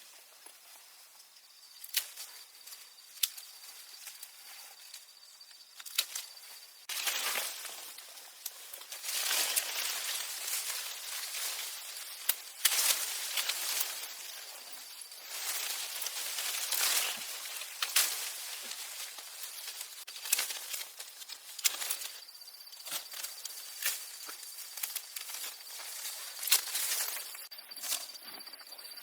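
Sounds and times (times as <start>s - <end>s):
leaves and branches rustling: 0.0s - 28.9s
twigs snapping: 6.9s - 14.3s, 15.2s - 22.1s, 23.0s - 27.4s.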